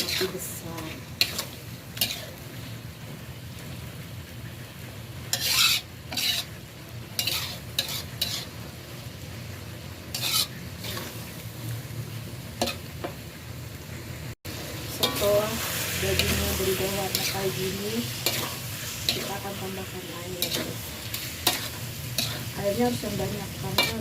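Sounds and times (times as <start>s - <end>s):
spatula scraping a wok: 0.0s - 2.9s, 5.2s - 9.0s, 10.0s - 11.7s, 12.6s - 13.1s, 14.8s - 24.0s
meat sizzling in a wok: 0.0s - 24.0s.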